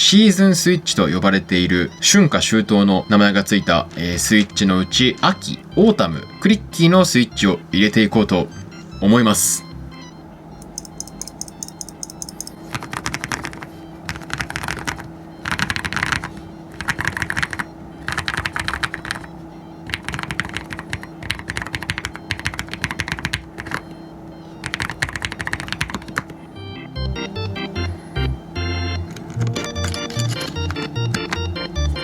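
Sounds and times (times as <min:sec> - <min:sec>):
quiet background music: 0:00.0 - 0:32.0
mechanical keyboard typing: 0:10.6 - 0:23.9, 0:24.6 - 0:26.4, 0:28.9 - 0:31.6.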